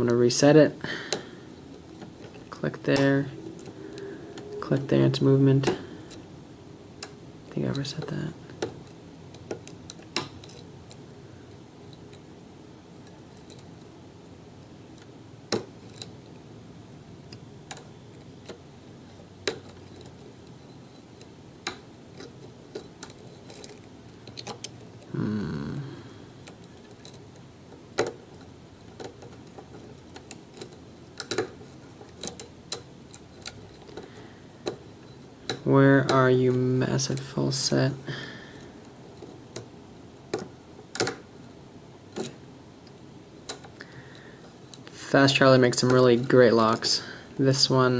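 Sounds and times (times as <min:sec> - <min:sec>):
lock picks clicking and tapping: 0:19.4 - 0:25.1, 0:26.4 - 0:36.2, 0:40.3 - 0:41.3, 0:42.1 - 0:44.9.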